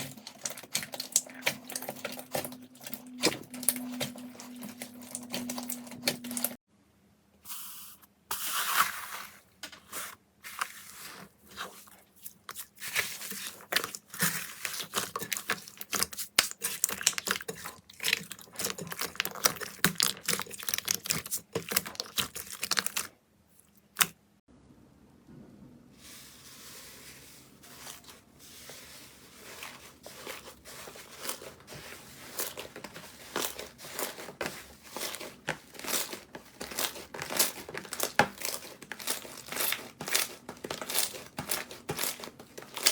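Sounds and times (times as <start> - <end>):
slime crackling and popping: 14.8 - 23.1, 33.2 - 42.9.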